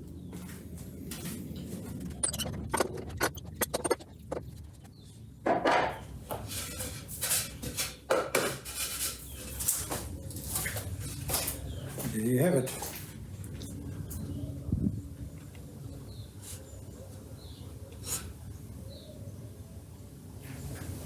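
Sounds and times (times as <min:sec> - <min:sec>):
sharp clicks and knocks: 0:02.0 - 0:04.9
scraping and rustling: 0:06.4 - 0:11.6.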